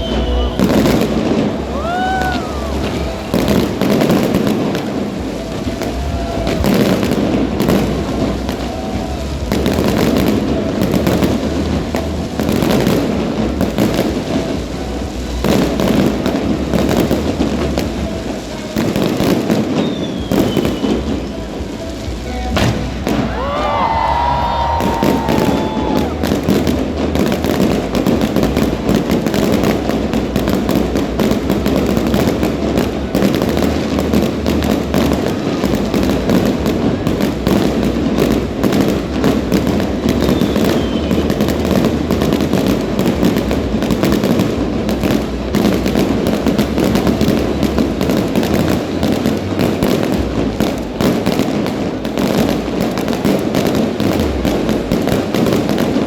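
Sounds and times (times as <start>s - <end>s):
faint falling whistle: 0.0s - 0.8s, 19.8s - 21.1s
fireworks bangs and crackles: 0.0s - 56.0s.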